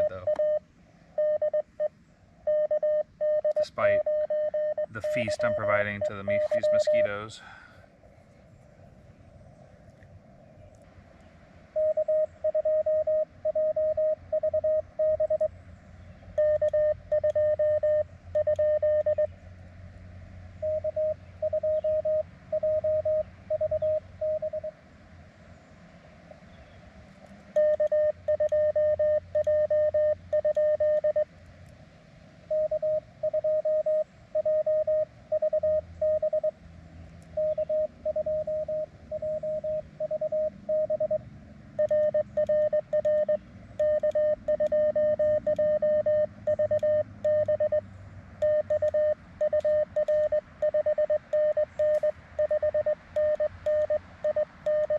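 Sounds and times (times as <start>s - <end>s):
morse code tone: 0.0s - 0.6s, 1.2s - 1.9s, 2.5s - 7.3s, 11.8s - 15.5s, 16.4s - 19.3s, 20.6s - 24.7s, 27.6s - 31.2s, 32.5s - 36.6s, 37.4s - 41.2s, 41.8s - 47.8s, 48.4s - 54.9s.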